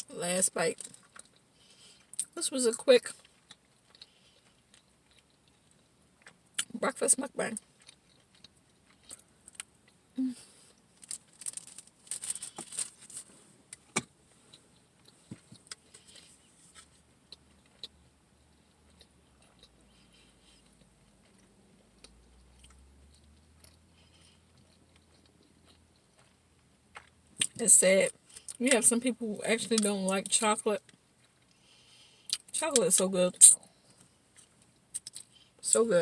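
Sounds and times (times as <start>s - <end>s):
chewing: 3.1s - 6.7s, 7.6s - 13.3s, 14.4s - 27.6s.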